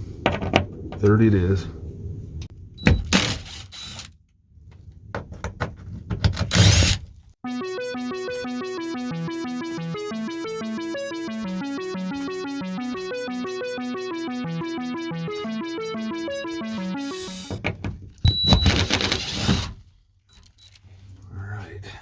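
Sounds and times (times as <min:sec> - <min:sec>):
synthesizer music: 0:07.4 - 0:17.5.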